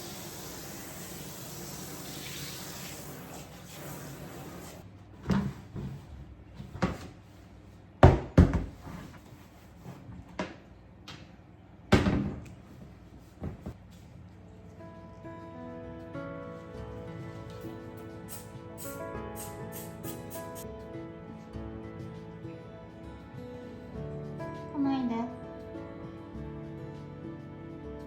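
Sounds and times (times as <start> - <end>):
knocks and clunks in kitchen: 4.5 - 7.3, 7.9 - 13.8.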